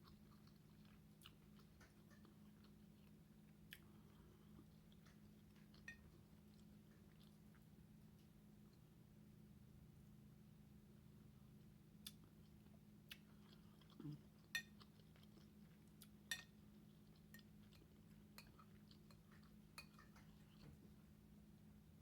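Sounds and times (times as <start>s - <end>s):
soft chewing: 0.0s - 21.7s
faint low hum: 0.0s - 22.0s
fork clinking against plate: 14.5s - 14.8s, 16.3s - 16.6s, 17.3s - 20.3s.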